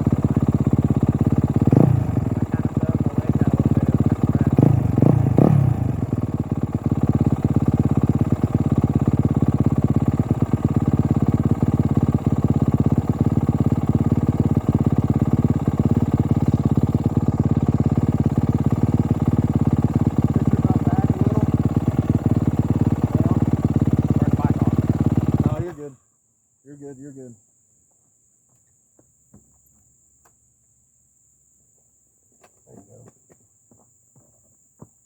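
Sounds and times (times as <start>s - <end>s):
motorbike engine idling: 0.0s - 25.9s.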